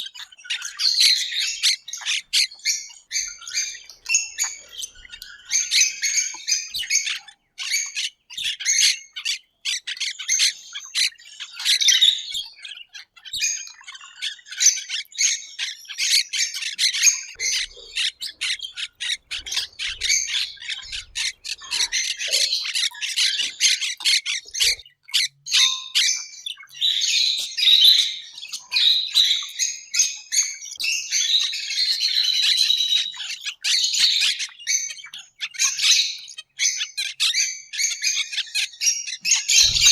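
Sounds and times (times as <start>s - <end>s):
parrots squawking and chattering: 0.0s - 39.9s.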